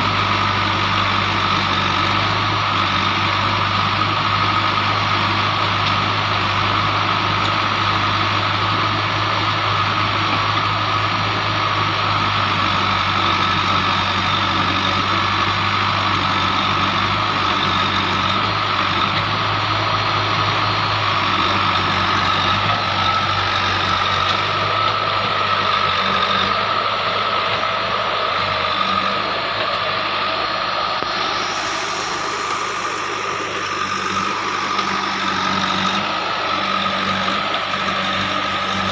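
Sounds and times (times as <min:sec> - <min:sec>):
diesel engine running: 0:00.0 - 0:38.9
high whine: 0:17.7 - 0:38.9.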